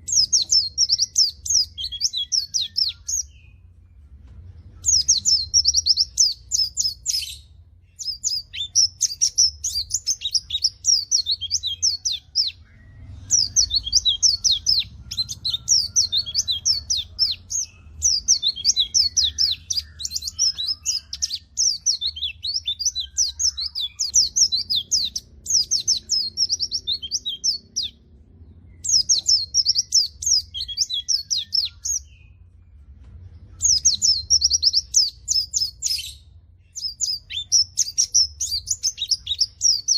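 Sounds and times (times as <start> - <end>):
bird twittering: 4.8 - 28.0.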